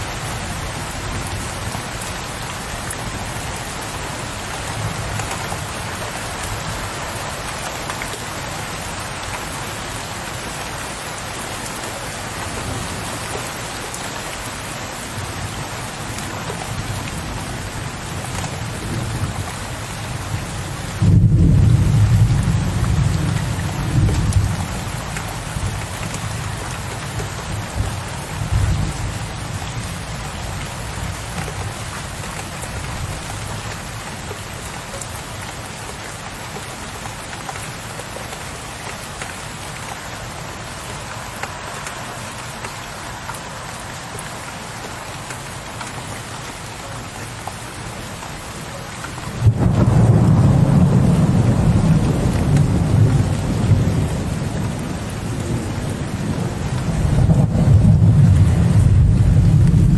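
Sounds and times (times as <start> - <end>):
heavy rain on a window ledge: 0.0 - 59.9
rolling thunder: 49.4 - 59.9.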